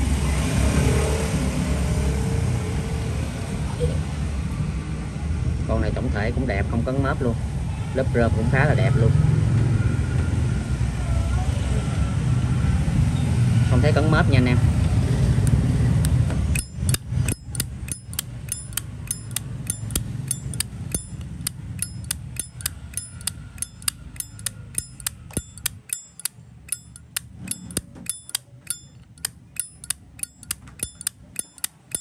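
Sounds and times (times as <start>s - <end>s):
lighter lid clacking open and shut: 16.6s - 32.0s.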